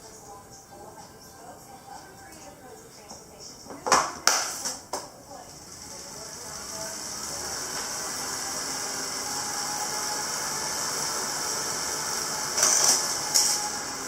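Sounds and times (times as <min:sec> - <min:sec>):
bike trainer whirring: 0:05.3 - 0:14.0.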